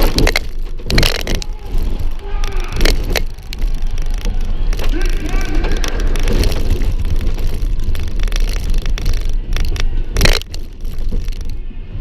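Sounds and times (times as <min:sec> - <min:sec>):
suspension clattering over bumps: 0:00.0 - 0:12.0.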